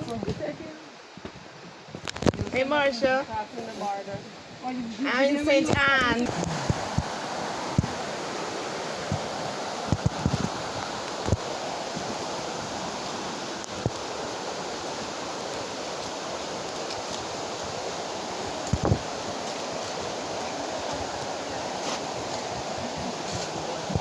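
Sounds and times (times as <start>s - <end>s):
river water rushing: 0.0s - 24.0s
low thumps on microphone: 5.6s - 8.0s.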